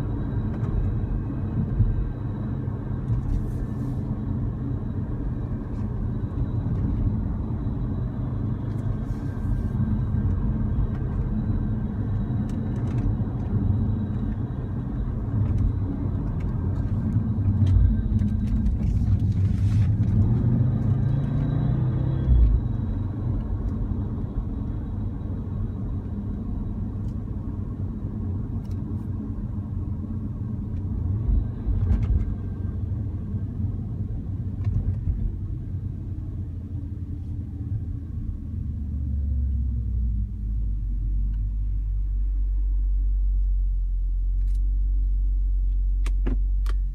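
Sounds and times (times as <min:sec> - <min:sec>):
engine and road rumble: 0:00.0 - 0:46.9.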